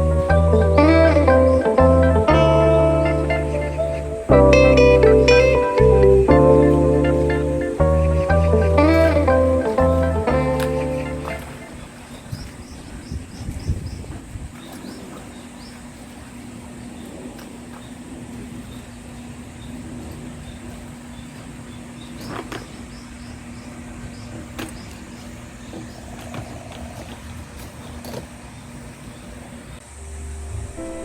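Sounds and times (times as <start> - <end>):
steady mechanical hum: 9.7 - 31.0
faint high hiss: 29.8 - 31.0
low rumble: 30.0 - 31.0.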